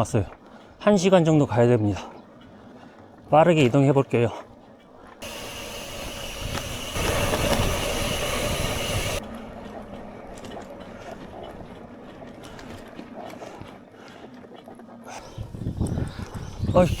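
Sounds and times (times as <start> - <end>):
wind and road noise: 5.2 - 12.9.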